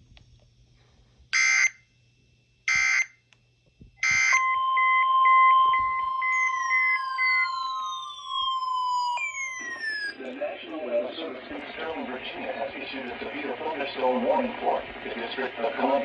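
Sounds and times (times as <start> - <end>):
screechy digital data bursts: 1.4 - 1.8, 2.7 - 3.1, 4.0 - 10.2
tones falling in pitch: 4.0 - 10.1
steady alert tone: 4.0 - 10.2.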